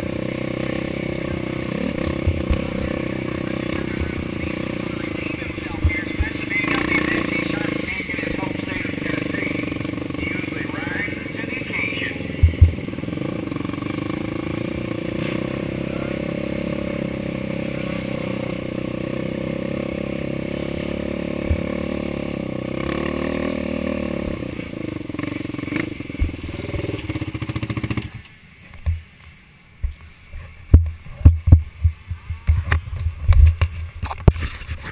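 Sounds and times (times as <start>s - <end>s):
atv engine running: 0.0s - 29.2s, 30.4s - 34.9s
sharp irregular knocks and thumps: 12.4s - 12.8s.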